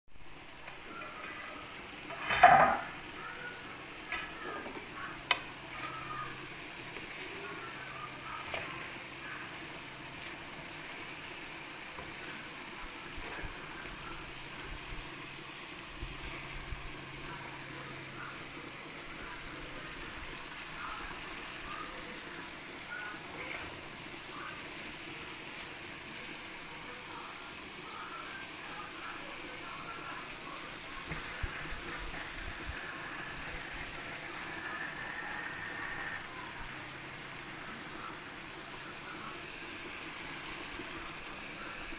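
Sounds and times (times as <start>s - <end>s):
vegetables sizzling in oil: 0.2s - 41.9s
oil popping and crackling: 3.9s - 7.8s.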